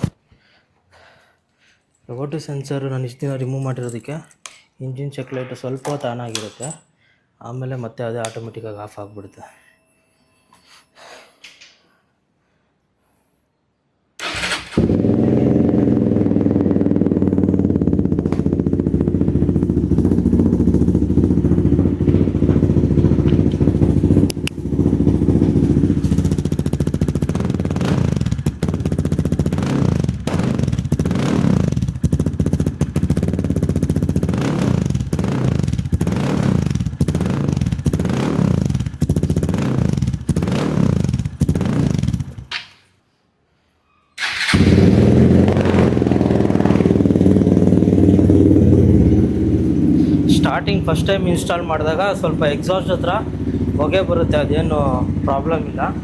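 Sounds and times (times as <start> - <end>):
motorcycle engine idling and revving: 14.2 - 42.6, 44.2 - 56.0.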